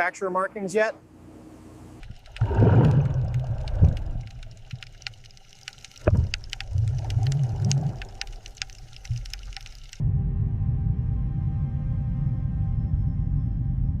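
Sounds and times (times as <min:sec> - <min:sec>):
fine crackling clicks: 0:02.0 - 0:10.0
low underwater rumbling: 0:02.0 - 0:10.0.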